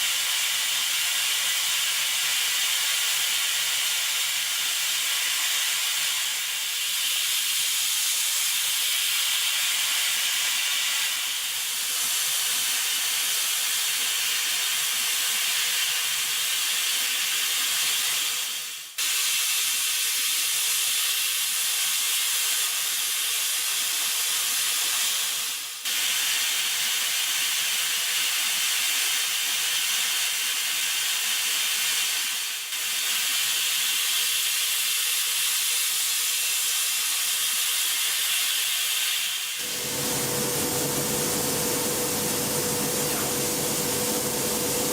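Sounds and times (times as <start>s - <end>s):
milling machine cutting metal: 39.6s - 44.9s.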